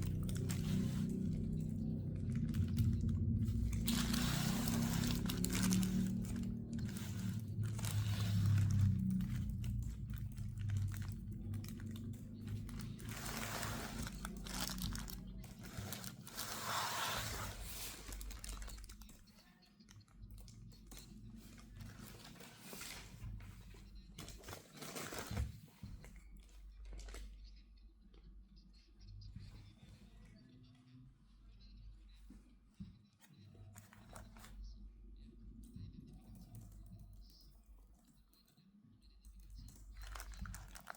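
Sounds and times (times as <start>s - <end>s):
packaging crinkling and rustling: 0.0s - 27.4s, 39.5s - 40.9s.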